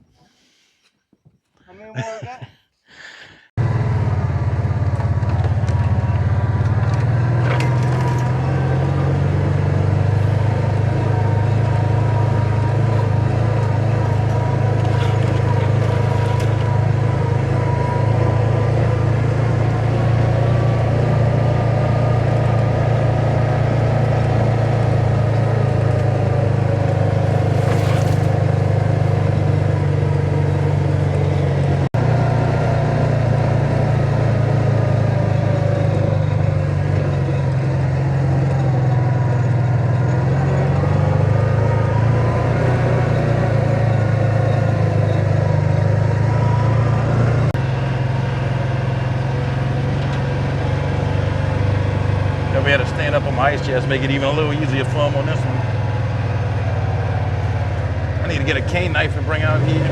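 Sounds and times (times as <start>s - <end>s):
vehicle engine droning: 3.5s - 59.9s.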